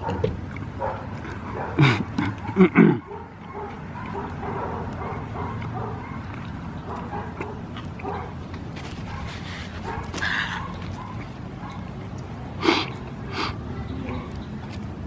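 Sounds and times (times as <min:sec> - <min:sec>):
dog barking: 0:00.0 - 0:06.3, 0:06.9 - 0:08.4, 0:09.1 - 0:11.9.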